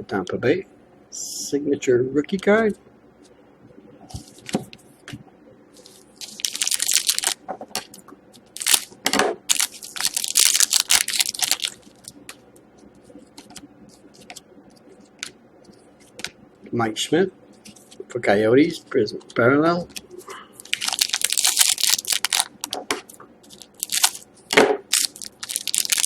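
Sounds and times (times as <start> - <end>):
card wrapper rustling and crinkling: 5.8 - 8.9, 9.5 - 12.2, 19.9 - 26.0.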